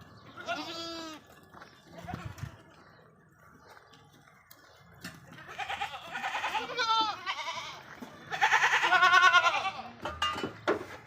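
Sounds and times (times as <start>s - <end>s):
goats bleating: 0.3s - 2.6s, 5.4s - 10.0s.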